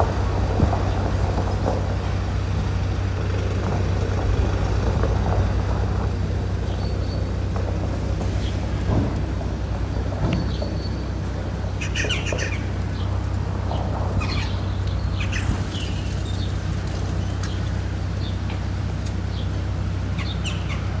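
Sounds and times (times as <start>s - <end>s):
small birds chirping: 9.8s - 18.6s, 20.2s - 20.9s.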